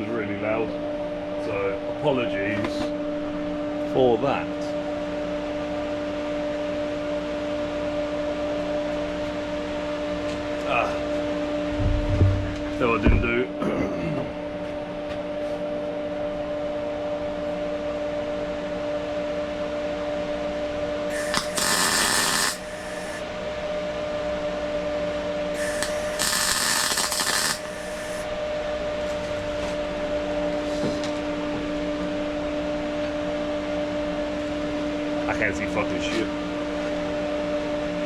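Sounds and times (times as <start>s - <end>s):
steady electrical hum: 20.6s - 32.5s
crackling welding arc: 21.1s - 23.2s, 25.6s - 28.3s.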